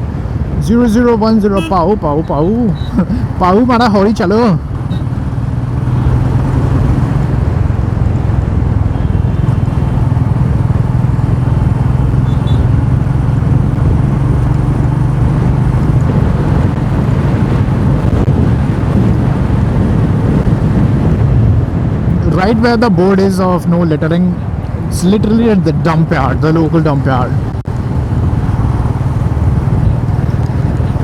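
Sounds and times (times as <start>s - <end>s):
road noise: 0.0s - 31.0s
wind rush: 0.0s - 31.0s
motorcycle engine running: 4.1s - 22.2s, 27.3s - 31.0s.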